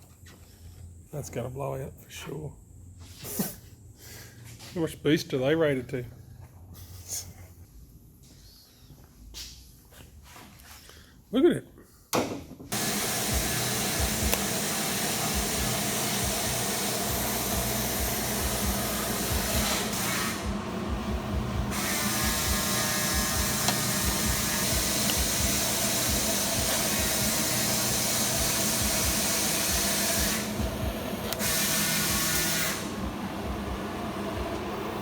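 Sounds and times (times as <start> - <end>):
power tool running with hiss: 12.7 - 35.0.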